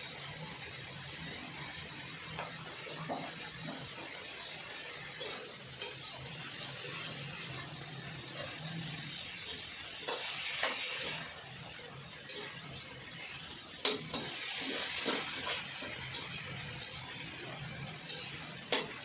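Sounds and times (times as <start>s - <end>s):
food sizzling in a frying pan: 0.0s - 19.0s
spatula knocking and scraping pan: 18.1s - 19.0s.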